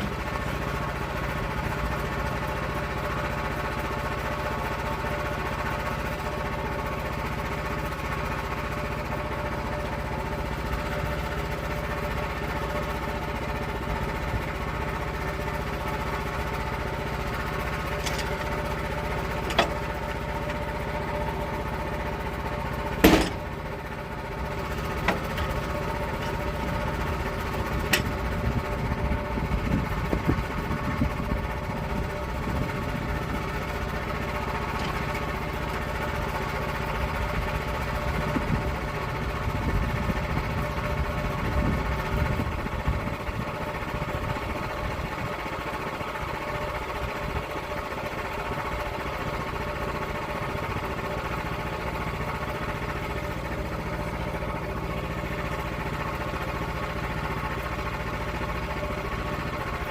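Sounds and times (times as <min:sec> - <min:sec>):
saw engine running: 0:00.0 - 0:40.6
sharp knocks: 0:23.0 - 0:23.4.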